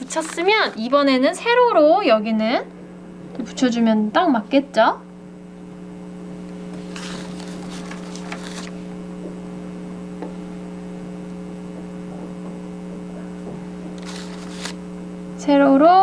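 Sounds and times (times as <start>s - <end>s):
rustling handling noise: 0.0s - 0.8s, 6.6s - 9.0s, 13.8s - 14.8s
electrical mains hum: 0.0s - 16.0s.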